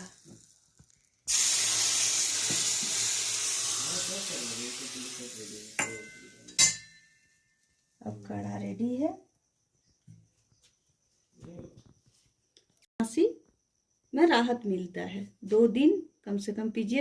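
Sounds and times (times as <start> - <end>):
hot ghee sizzling: 0.0 - 6.8
sharp clinks: 5.8 - 7.8.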